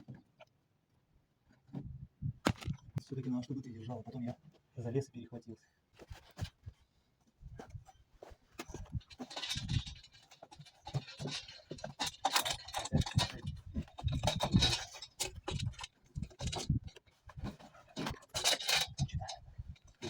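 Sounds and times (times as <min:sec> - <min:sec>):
knocks and clatter on chimney pipe: 0:08.6 - 0:20.0.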